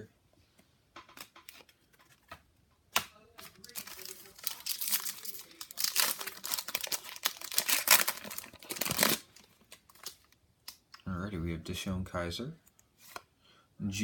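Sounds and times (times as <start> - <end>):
wrapper tearing and crinkling: 3.4 - 11.0.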